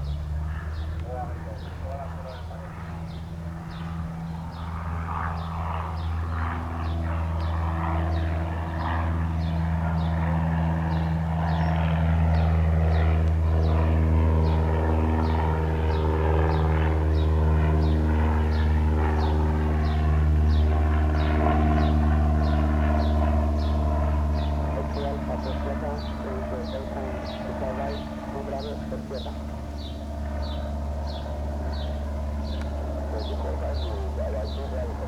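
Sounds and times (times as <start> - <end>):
propeller plane engine: 0.0 - 35.0.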